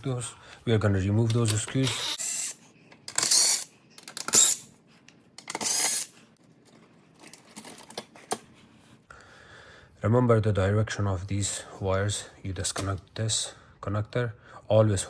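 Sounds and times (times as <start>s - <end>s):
screws rasping out: 1.7s - 4.6s, 5.4s - 6.2s.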